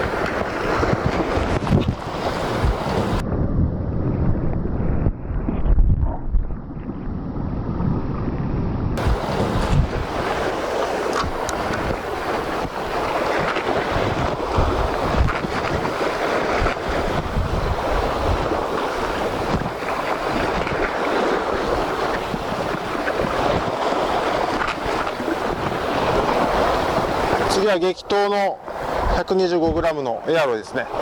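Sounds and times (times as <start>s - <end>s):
surf washing against shore: 0.0s - 3.2s, 9.0s - 31.0s
wind buffeting microphone: 0.0s - 31.0s.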